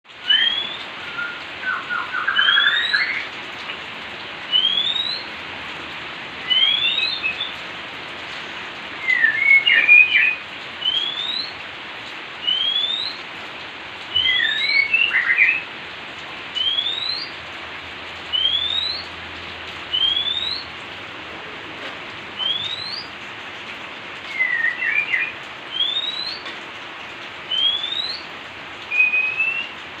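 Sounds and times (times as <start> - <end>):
falling rain hiss: 0.1 - 30.0
bird whistling and chattering: 0.3 - 3.3, 4.5 - 5.3, 6.5 - 7.5, 9.0 - 11.5, 12.4 - 13.2, 14.2 - 15.6, 16.6 - 17.3, 18.3 - 19.0, 19.9 - 20.7, 22.4 - 23.1, 24.3 - 26.4, 27.5 - 28.3, 28.9 - 29.8.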